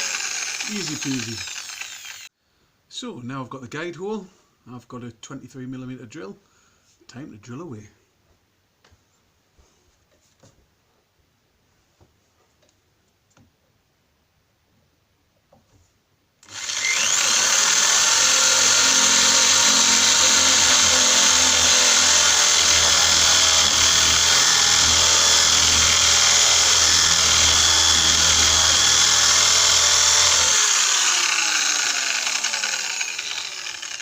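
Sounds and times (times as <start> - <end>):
electric drill boring into door: 0.0 - 2.3, 16.4 - 34.0.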